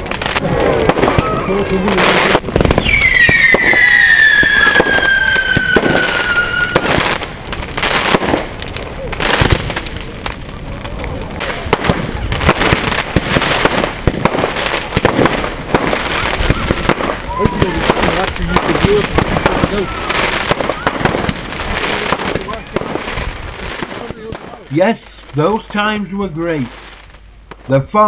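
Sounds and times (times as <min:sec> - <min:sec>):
fireworks bangs and crackles: 0:00.0 - 0:28.0
firework falling whistle: 0:01.0 - 0:07.1.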